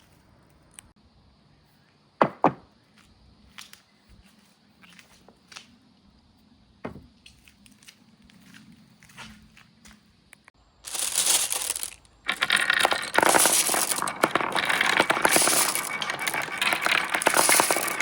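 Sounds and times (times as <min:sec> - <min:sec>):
glass marbles clicking on track: 0:10.9 - 0:18.0.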